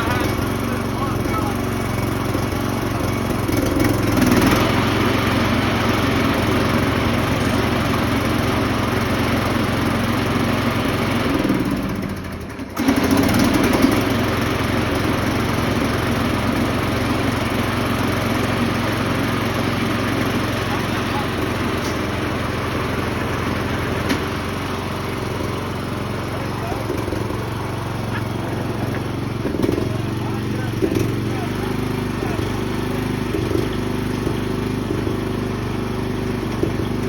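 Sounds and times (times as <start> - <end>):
small gasoline engine running: 0.0 - 37.0.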